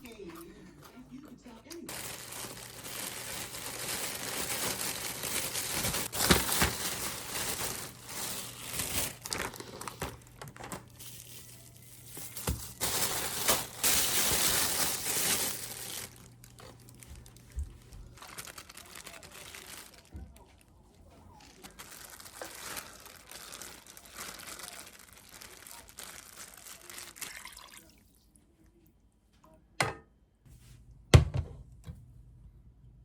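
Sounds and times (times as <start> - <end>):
packaging crinkling and rustling: 1.9 - 27.5.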